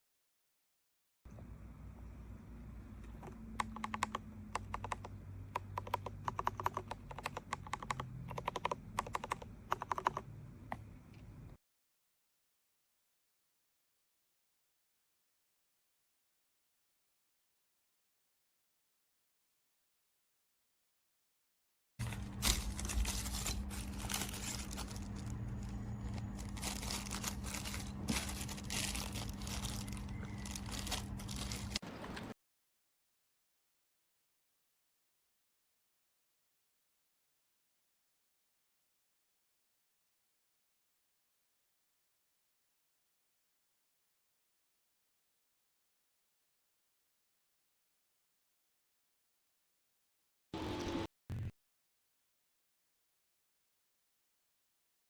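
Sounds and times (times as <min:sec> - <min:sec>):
mechanical keyboard typing: 0:03.1 - 0:10.3
steady low hum: 0:22.0 - 0:31.8
crinkling and rustling handling: 0:22.0 - 0:32.3.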